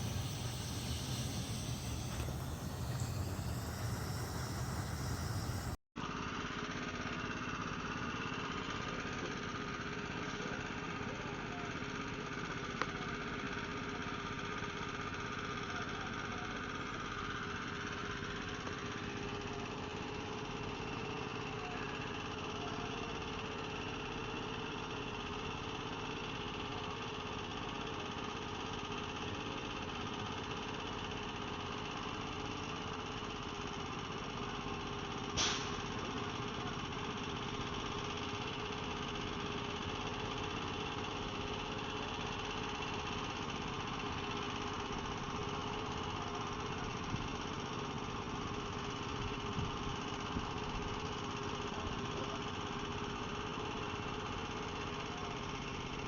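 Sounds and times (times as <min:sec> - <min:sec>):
lawn mower engine running: 0:00.0 - 0:05.8.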